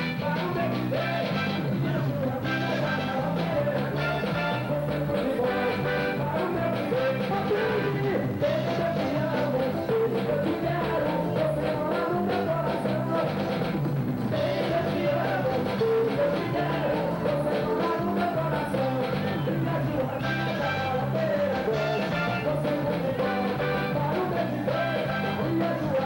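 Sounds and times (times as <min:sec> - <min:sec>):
person singing: 0:00.0 - 0:13.7, 0:14.3 - 0:26.0
band playing: 0:00.0 - 0:26.0
stepping bass line: 0:00.0 - 0:26.0.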